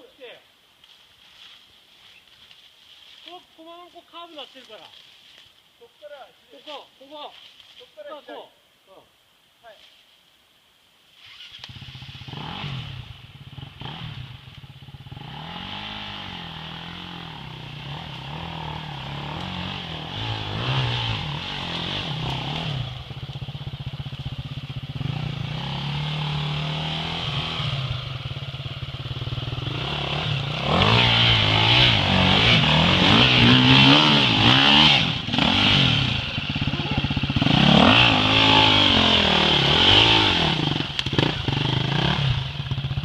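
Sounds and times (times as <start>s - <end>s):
off-road vehicle engine revving: 11.4s - 43.0s.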